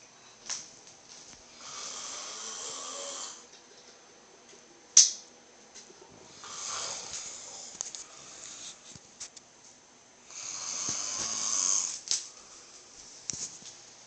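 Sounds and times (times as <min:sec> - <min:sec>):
man snoring: 0:01.5 - 0:03.4, 0:06.3 - 0:08.4, 0:10.3 - 0:12.1.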